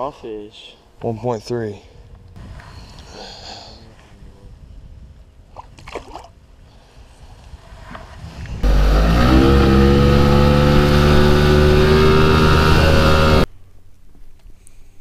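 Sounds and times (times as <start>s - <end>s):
outboard motor running: 8.6s - 13.5s.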